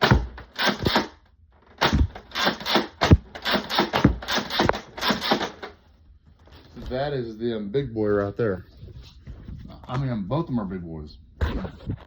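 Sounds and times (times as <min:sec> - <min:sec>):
toy dart blaster priming clack: 0:01.8 - 0:05.7.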